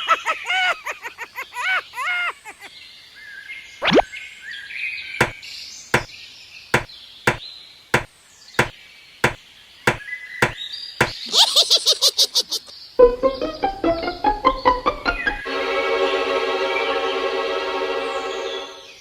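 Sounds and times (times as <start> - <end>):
sharp knocks: 6.8 - 7.4, 8.0 - 11.2.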